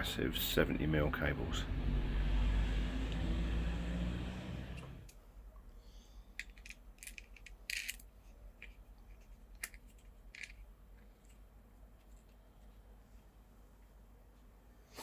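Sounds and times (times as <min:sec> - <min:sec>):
faint low hum: 0:00.0 - 0:15.0
small electrical parts clicking: 0:06.4 - 0:11.4.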